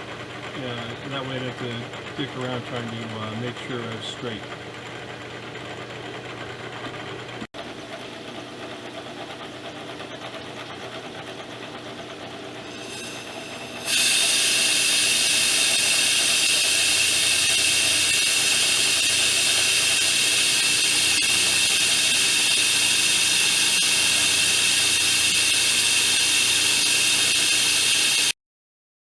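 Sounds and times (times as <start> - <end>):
milling machine cutting metal: 0.1 - 5.9, 11.1 - 28.3.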